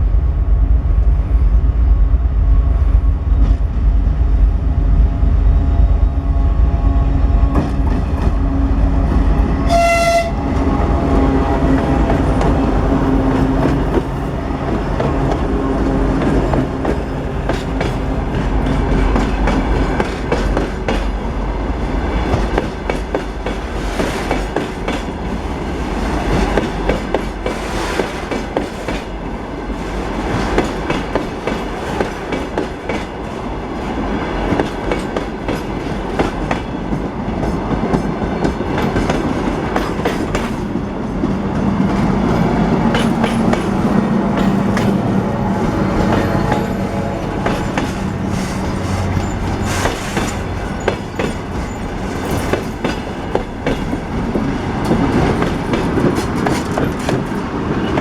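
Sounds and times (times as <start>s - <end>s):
train wheels clattering: 7.5s - 21.2s, 34.5s - 58.0s.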